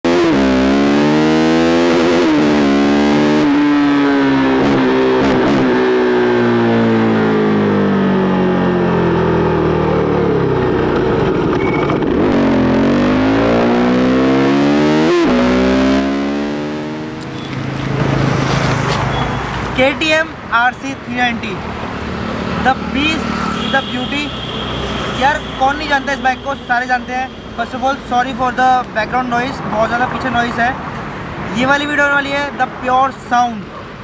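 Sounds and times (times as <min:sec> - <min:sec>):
motorcycle engine revving: 0:00.0 - 0:19.8, 0:21.6 - 0:26.2.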